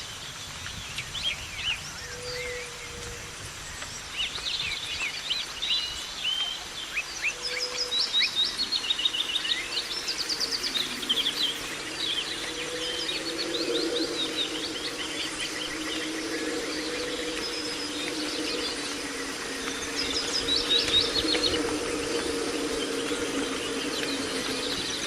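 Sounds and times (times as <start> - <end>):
songbirds chirping and singing: 0.0 - 25.0
steady outdoor hiss: 0.0 - 25.0
low wavering hum: 8.5 - 25.0.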